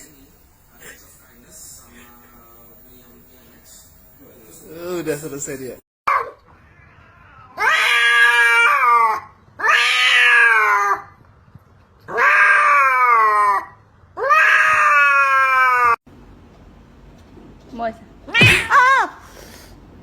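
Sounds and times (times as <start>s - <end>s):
cat yowling: 6.1s - 11.1s, 12.1s - 16.0s, 18.4s - 19.0s.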